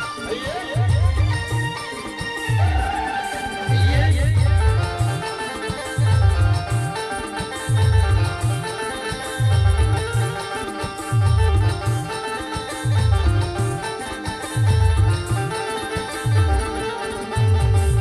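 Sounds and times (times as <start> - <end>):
plucked melody line: 0.0 - 18.0
deep booming drum beats: 3.9 - 5.2, 14.6 - 15.5.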